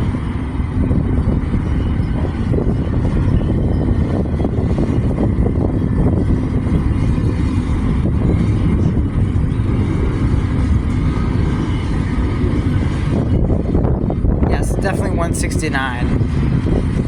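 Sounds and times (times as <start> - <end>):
freight train wheels rumbling: 0.0 - 17.0.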